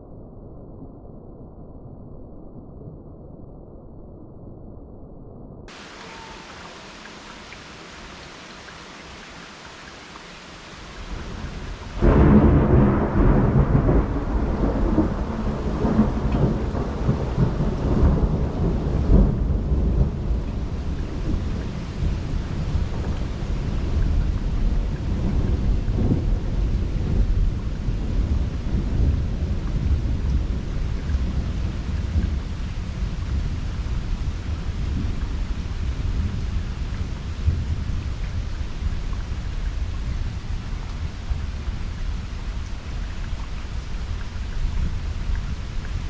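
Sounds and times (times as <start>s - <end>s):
steady rain hiss: 5.7s - 46.0s
thunder rumbling: 10.8s - 46.0s.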